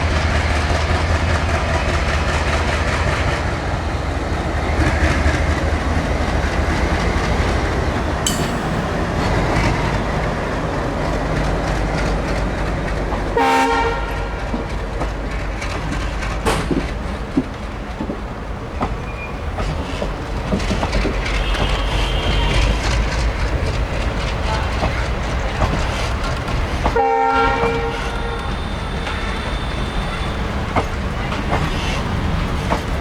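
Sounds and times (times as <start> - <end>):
multi-tone locomotive horn: 13.3 - 14.7, 21.2 - 23.2, 24.4 - 25.1, 26.9 - 31.4
wheels clattering over rail joints: 14.4 - 27.0, 27.6 - 33.0
faint wheel squeal: 27.9 - 31.0.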